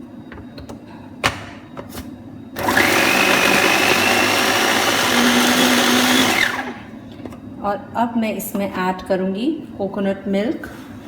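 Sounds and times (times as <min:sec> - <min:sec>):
electric blender running: 0:02.6 - 0:06.9.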